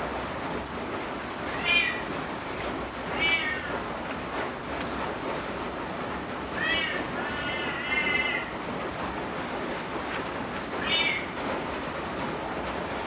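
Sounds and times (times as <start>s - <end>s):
cat meowing: 1.6s - 2.0s, 3.1s - 3.8s, 6.6s - 8.6s, 10.8s - 11.4s.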